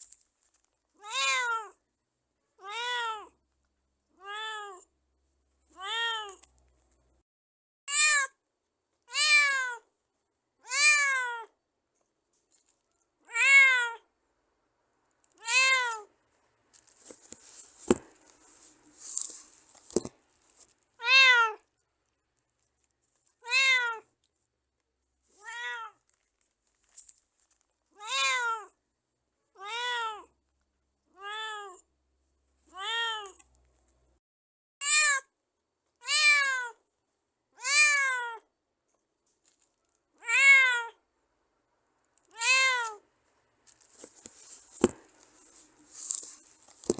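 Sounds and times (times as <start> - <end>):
cat meowing: 1.0 - 1.8, 2.6 - 3.3, 4.2 - 4.9, 5.8 - 6.4, 9.1 - 9.8, 10.6 - 11.5, 13.3 - 14.1, 15.4 - 16.1, 21.0 - 21.6, 23.4 - 24.1, 25.4 - 26.0, 28.0 - 28.7, 29.6 - 30.3, 31.2 - 31.8, 32.7 - 33.4, 36.0 - 36.8, 37.6 - 38.4, 40.2 - 41.0, 42.3 - 43.0
faint scuffling: 16.7 - 21.4, 43.7 - 46.9.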